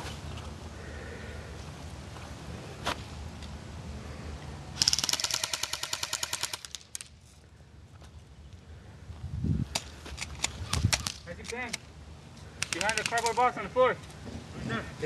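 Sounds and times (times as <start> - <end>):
airsoft gun full-auto burst: 4.8 - 6.8.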